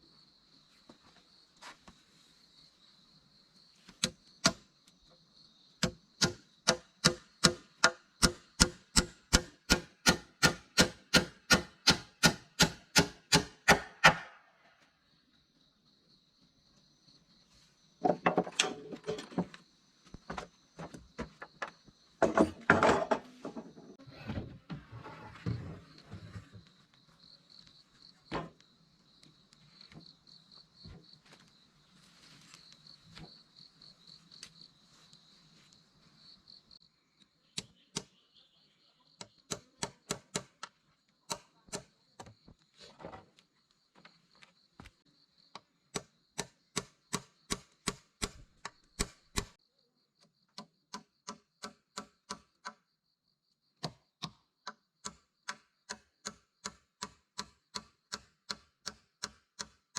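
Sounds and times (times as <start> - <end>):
handling clatter and knocks: 18.0 - 19.6, 20.2 - 24.0
insects trilling: 25.4 - 56.7.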